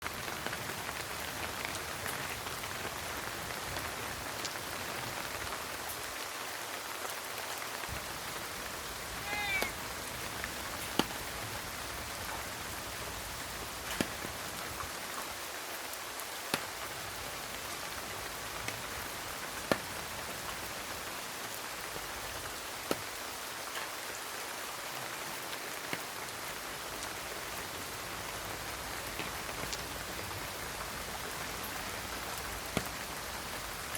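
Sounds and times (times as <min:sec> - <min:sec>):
rain falling: 0:00.0 - 0:33.9
cat meowing: 0:09.2 - 0:09.8.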